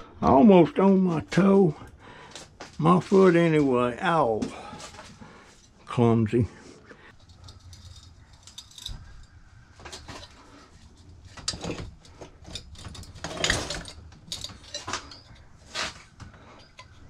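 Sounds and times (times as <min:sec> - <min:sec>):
hand tools and metal parts handled: 0:00.7 - 0:06.0, 0:06.9 - 0:17.0
metal clatter: 0:07.1 - 0:17.0.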